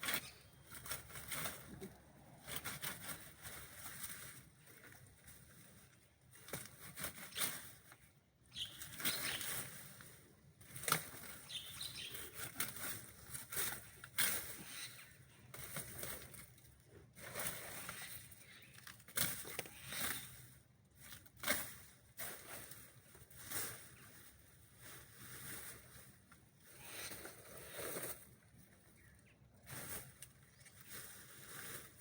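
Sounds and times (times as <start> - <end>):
grass and brush swishing: 21.4 - 28.4, 29.6 - 32.0.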